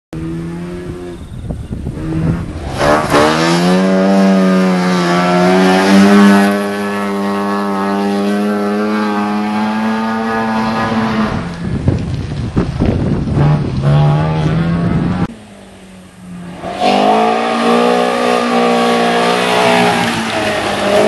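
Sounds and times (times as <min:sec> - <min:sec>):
car engine revving: 0:00.2 - 0:21.0.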